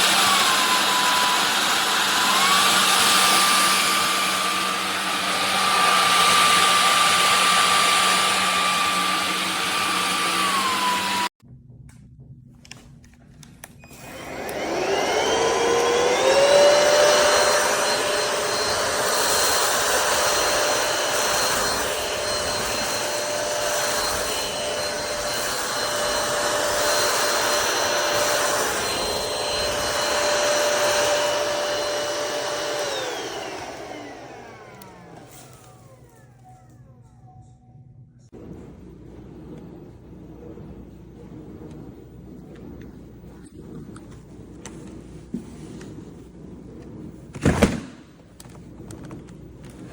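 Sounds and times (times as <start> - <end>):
vacuum cleaner motor whining: 0.0 - 11.4, 13.6 - 37.0.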